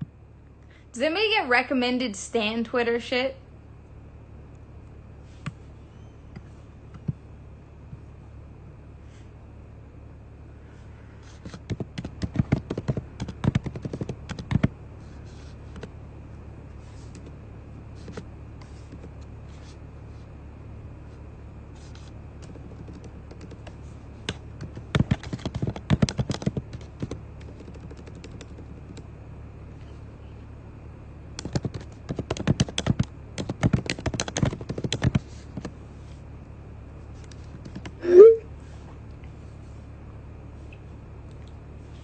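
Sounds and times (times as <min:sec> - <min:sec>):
low steady hum: 0:00.0 - 0:42.0
keyboard typing clicks: 0:24.3 - 0:29.0.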